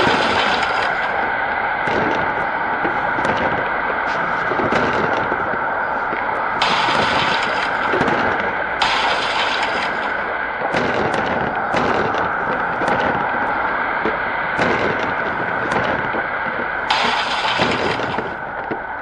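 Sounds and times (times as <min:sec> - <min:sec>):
debris cracking: 0:00.0 - 0:18.8
loud wind: 0:00.0 - 0:19.0.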